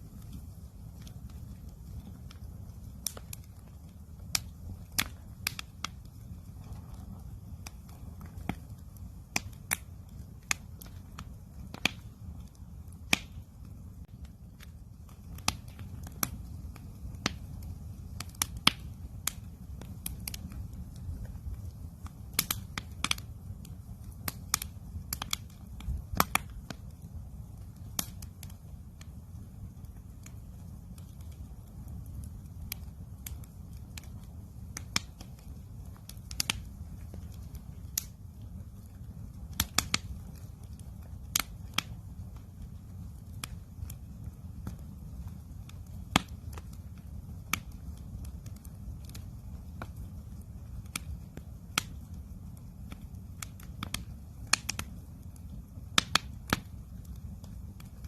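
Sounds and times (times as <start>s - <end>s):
campfire crackling and popping: 0.0s - 58.0s.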